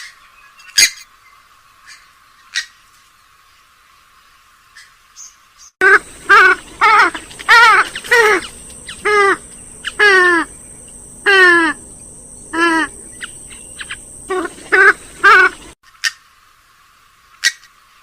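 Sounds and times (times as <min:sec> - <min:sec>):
bird giving nasal calls: 0:05.8 - 0:15.8.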